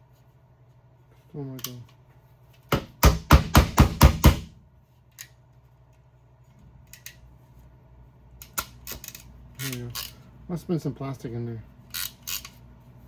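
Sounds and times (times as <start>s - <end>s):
tool knocking against a surface: 2.7s - 4.5s.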